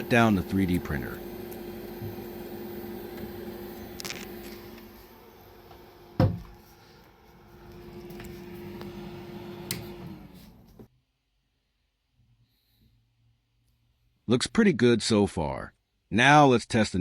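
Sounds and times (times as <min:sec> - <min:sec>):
printer fan hum: 0:00.0 - 0:10.9.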